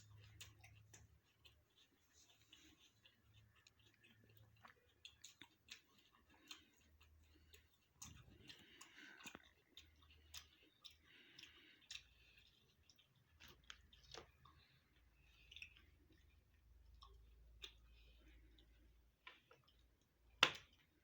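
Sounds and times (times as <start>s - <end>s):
wet mouth clicks: 0.0s - 16.2s
person chewing food: 0.0s - 21.0s.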